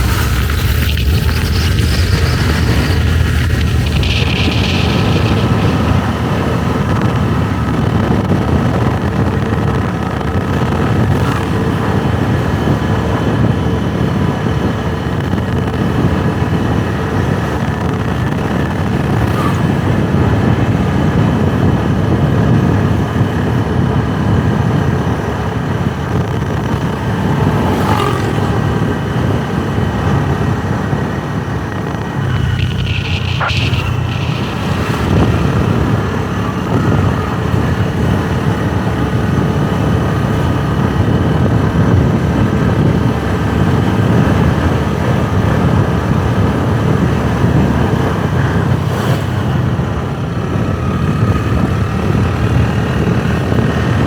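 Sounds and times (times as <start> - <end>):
motorbike engine: 0.0 - 54.0
wind rumble on microphone: 0.0 - 54.0.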